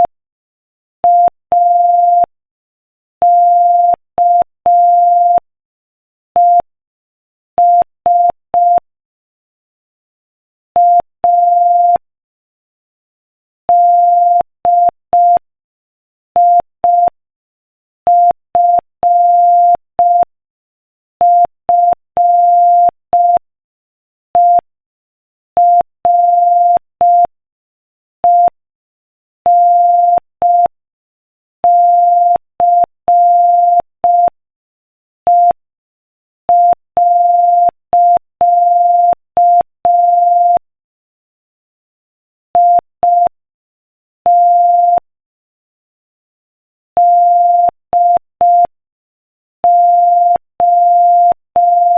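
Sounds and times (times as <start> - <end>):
morse code beeps: 1.1 - 2.3, 18.1 - 20.3, 21.2 - 23.4, 25.6 - 27.3, 29.5 - 30.7, 31.7 - 34.4, 35.3 - 35.6, 36.5 - 40.6, 42.6 - 43.4, 44.3 - 45.1, 47.0 - 48.7, 49.6 - 51.9.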